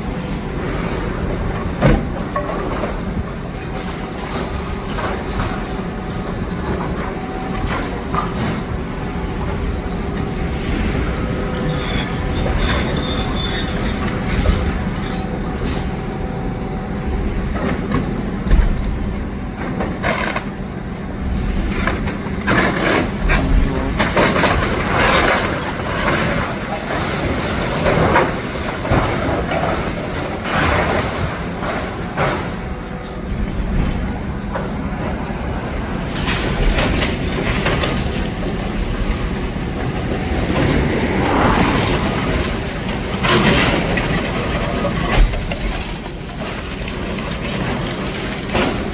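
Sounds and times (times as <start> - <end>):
excavator diesel engine running: 0.0 - 48.9
rubble crunching and clattering: 17.5 - 35.2, 42.3 - 48.9.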